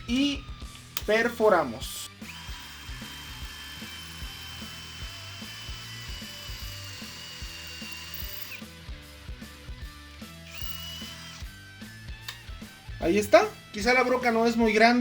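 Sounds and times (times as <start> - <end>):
drill whining into concrete: 0.0 - 9.7, 10.3 - 12.0.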